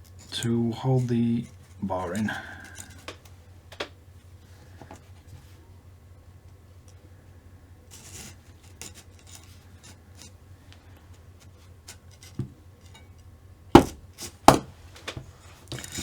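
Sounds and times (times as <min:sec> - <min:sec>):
sharp knocks: 0:13.8 - 0:14.7.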